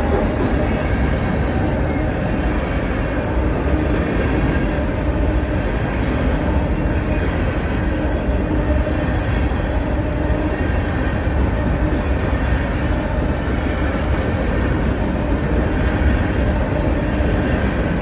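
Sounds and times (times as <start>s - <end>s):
train wheels rumbling on rails: 0.0s - 18.0s.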